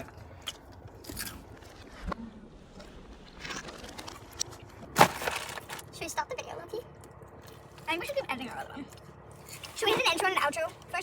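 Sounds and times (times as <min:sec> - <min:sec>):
crunching and chewing: 0:00.0 - 0:06.0, 0:08.9 - 0:10.0.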